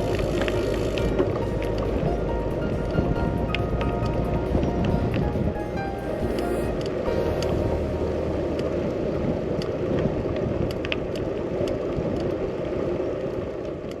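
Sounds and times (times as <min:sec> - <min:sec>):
low rumble of travel noise: 0:00.0 - 0:14.0.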